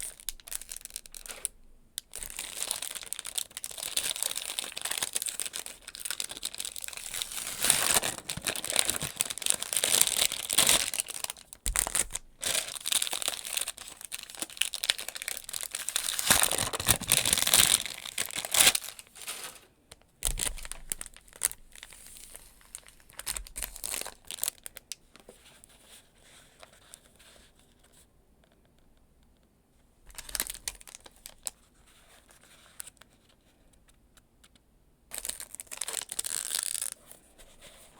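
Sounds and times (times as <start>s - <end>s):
packaging tearing: 0.0s - 19.6s, 20.2s - 24.8s, 30.1s - 31.5s, 35.1s - 37.0s
packaging crinkling and rustling: 0.0s - 25.8s, 30.1s - 31.6s, 35.1s - 37.9s.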